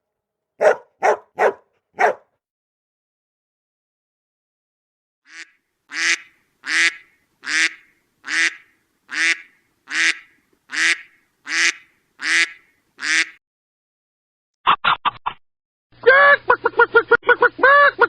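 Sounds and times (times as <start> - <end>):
duck quacking: 5.3 - 13.4.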